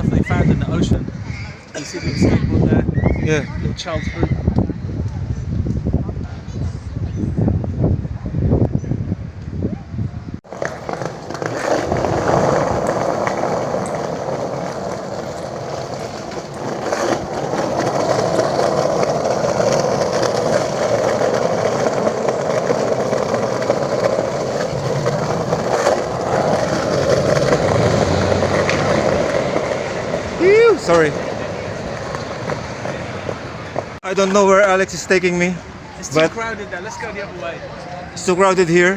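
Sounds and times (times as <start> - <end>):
skateboard wheels rolling on paving: 10.4 - 38.9
skateboard clacks: 10.5 - 34.4.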